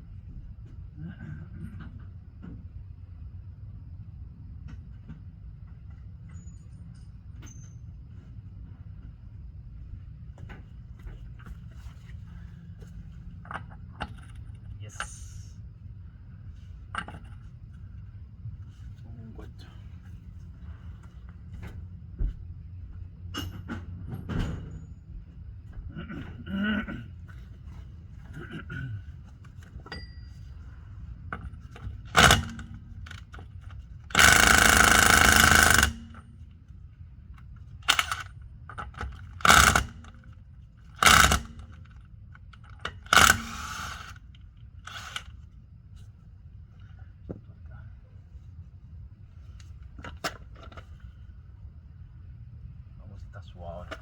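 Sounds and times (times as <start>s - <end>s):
air tool burst: 32.1s - 32.7s, 34.1s - 36.2s, 39.4s - 40.1s, 41.0s - 41.7s, 43.1s - 44.2s.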